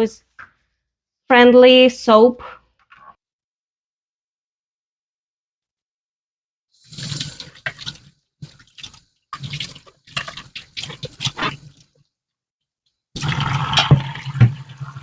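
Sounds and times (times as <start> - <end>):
tap water running and splashing: 6.8 - 12.0, 13.2 - 15.0.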